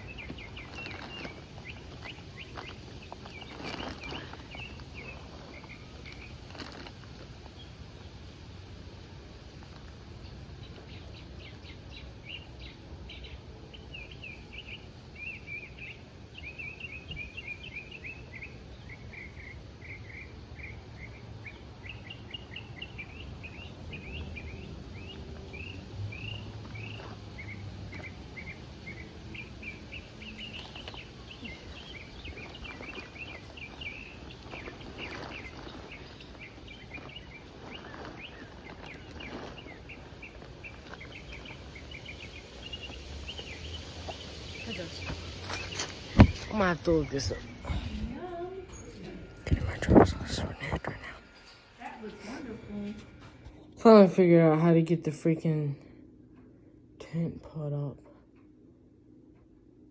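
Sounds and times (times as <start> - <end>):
rustles or clicks: 0.0 - 7.6, 30.0 - 47.4
birds chirping: 0.0 - 55.8
low background rumble: 0.0 - 59.9.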